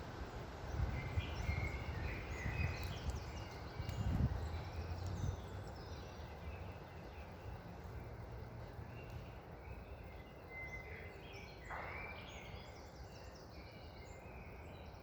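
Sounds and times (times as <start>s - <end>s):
gusty wind rumble: 0.0s - 9.7s
songbirds chirping and trilling: 0.0s - 15.0s.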